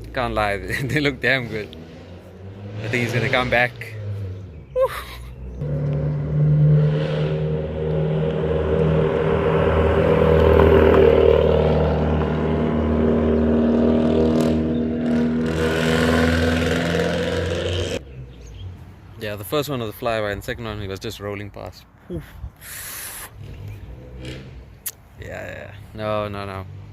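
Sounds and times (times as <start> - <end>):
car driving past: 1.2 - 4.7, 5.4 - 18.7.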